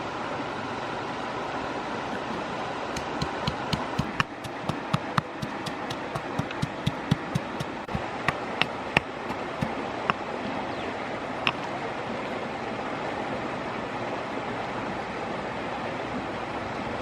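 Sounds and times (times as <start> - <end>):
river flowing: 0.0 - 17.0
sharp clicks and taps: 2.9 - 10.2.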